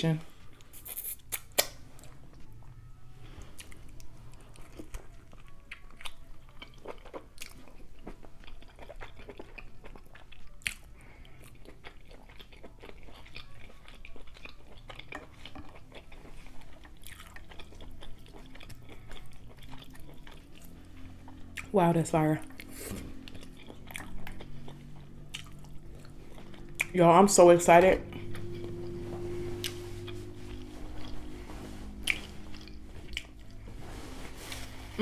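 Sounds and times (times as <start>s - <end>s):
faint low hum: 0.0s - 35.0s
chewing and mouth smacks: 0.5s - 2.7s, 3.4s - 21.8s, 22.4s - 27.0s, 31.9s - 33.6s.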